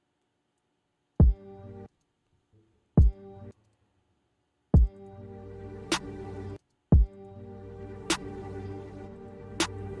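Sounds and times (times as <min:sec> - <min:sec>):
held synth chord: 0:05.0 - 0:10.0.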